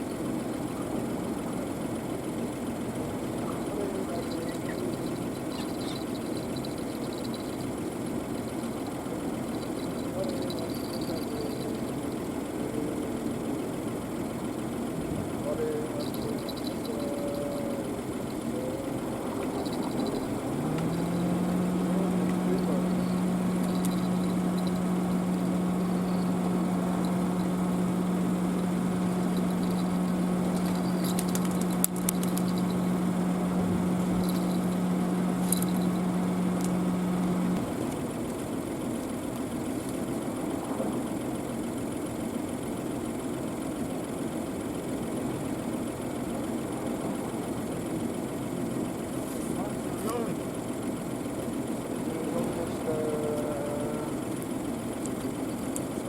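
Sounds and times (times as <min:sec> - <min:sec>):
engine idling: 0:00.0 - 0:56.0
motor hum: 0:00.0 - 0:56.0
sharp clicks: 0:18.2 - 0:32.9, 0:34.0 - 0:36.8.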